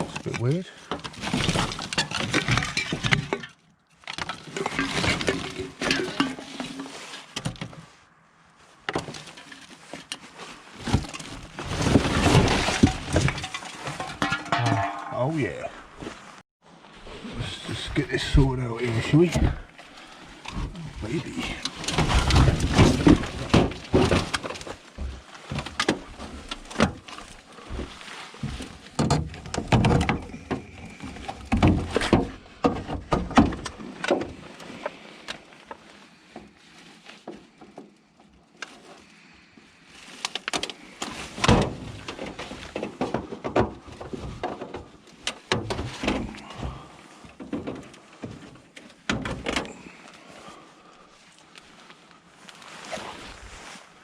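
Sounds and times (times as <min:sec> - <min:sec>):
scrap metal clattering: 0:04.2 - 0:07.5, 0:10.8 - 0:15.6.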